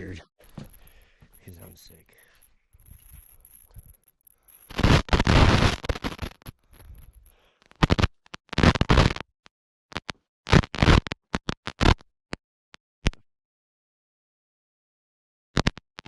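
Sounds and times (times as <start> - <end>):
scratchy rubbing on microphone: 0.1 - 9.2.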